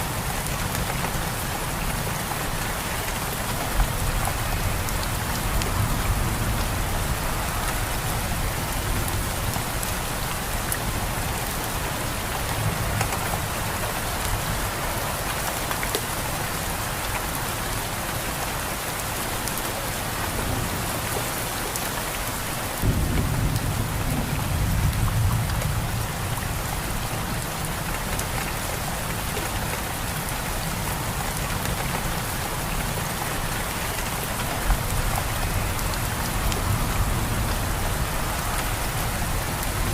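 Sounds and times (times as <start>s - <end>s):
rain falling: 0.0s - 39.9s
thunder rumbling: 22.8s - 26.3s.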